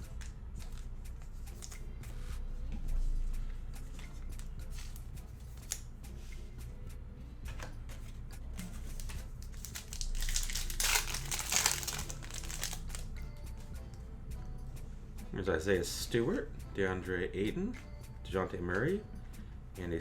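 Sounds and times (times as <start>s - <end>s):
cards clicking: 8.6s - 13.1s
card pack wrapper tearing and crinkling: 8.8s - 13.1s.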